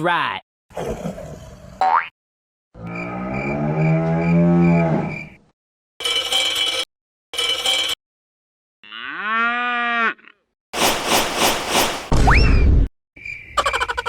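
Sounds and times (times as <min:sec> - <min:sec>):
cartoon cow mooing: 0:08.8 - 0:10.5.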